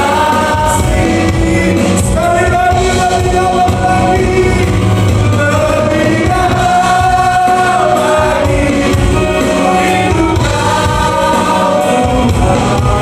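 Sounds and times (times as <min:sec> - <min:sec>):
group of voices singing: 0:00.0 - 0:13.0
instrumental backing: 0:00.0 - 0:13.0.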